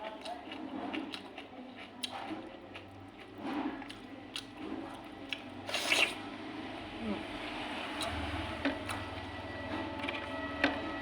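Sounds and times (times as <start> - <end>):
person chewing wetly: 0.0 - 6.2.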